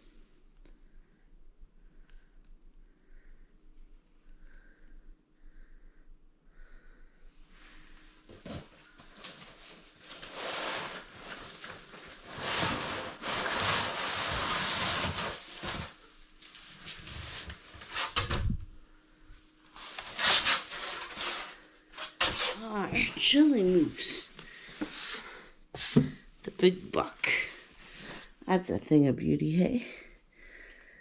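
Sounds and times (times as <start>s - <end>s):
cardboard and plastic rustling: 8.3s - 18.5s.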